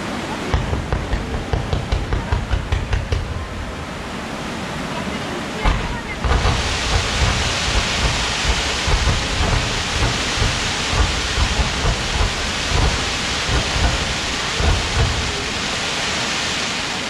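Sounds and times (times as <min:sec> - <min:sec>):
fireworks crackling: 0:00.5 - 0:04.5, 0:05.6 - 0:17.0
fireworks booming: 0:00.5 - 0:04.7, 0:05.6 - 0:16.9.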